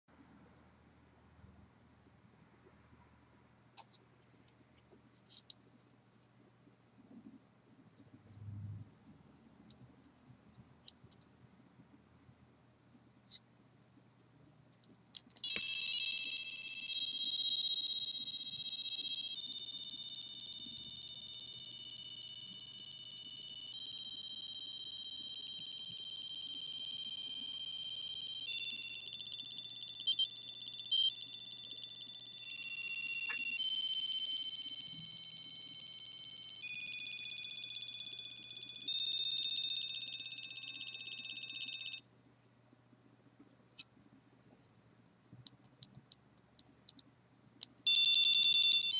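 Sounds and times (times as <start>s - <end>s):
click: 45.4s - 47.8s.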